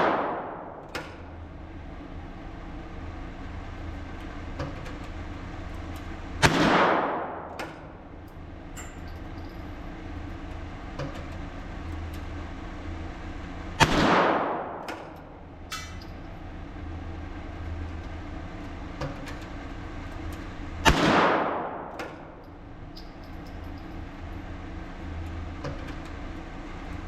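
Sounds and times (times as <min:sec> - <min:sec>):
rifle shots cracking: 0:00.0 - 0:01.3, 0:06.4 - 0:08.1, 0:13.8 - 0:15.2, 0:20.8 - 0:22.4
faint small clicks: 0:22.0 - 0:23.9.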